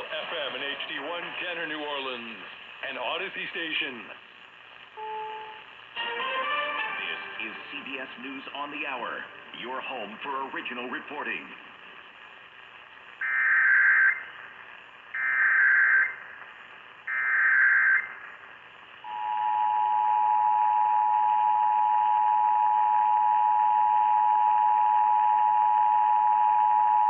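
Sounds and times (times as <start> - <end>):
faint radio hiss: 0.0 - 27.0
short data bursts: 13.2 - 14.5, 15.1 - 16.4, 17.1 - 18.3.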